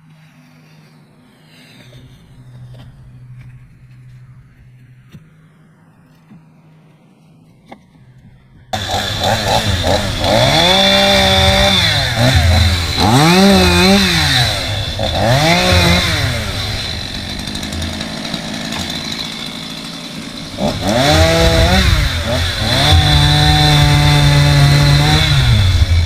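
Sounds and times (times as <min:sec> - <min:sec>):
chainsaw revving: 0:08.8 - 0:26.0.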